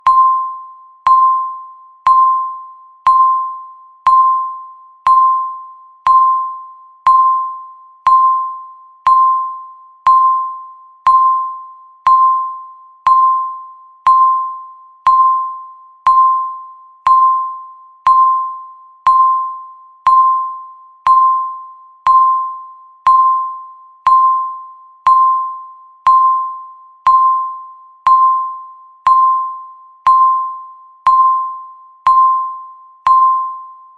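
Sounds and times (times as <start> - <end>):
timer tick with short ring: 0.0 - 33.7.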